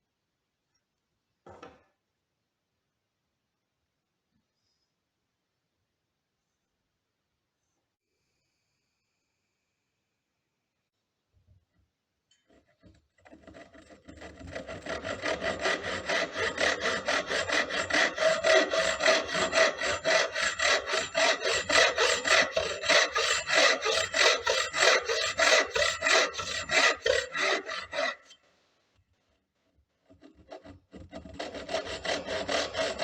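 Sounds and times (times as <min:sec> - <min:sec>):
hand tool scraping wood: 0:12.4 - 0:28.4, 0:29.3 - 0:33.0.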